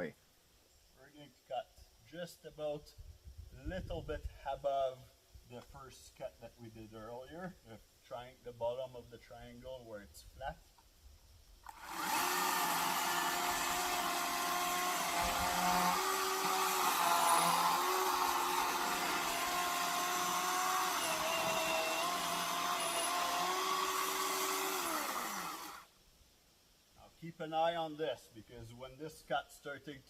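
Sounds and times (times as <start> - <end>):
electric chainsaw cutting wood: 11.7 - 25.9.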